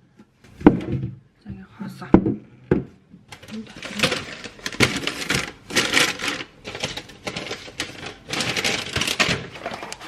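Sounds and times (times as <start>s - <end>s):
crinkly rustling: 3.3s - 10.0s.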